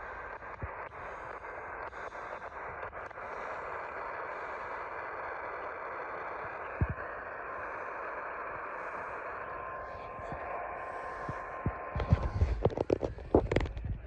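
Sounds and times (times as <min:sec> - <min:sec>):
radio static hiss: 0:00.0 - 0:14.0
static crackles: 0:00.0 - 0:14.0.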